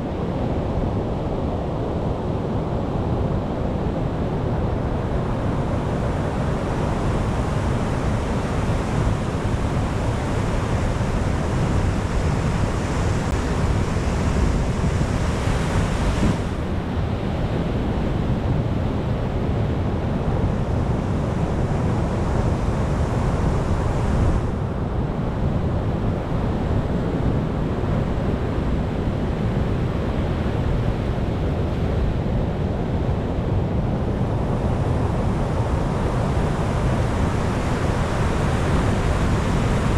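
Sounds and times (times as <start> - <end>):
ocean waves breaking: 6.0 - 16.8, 34.2 - 39.9.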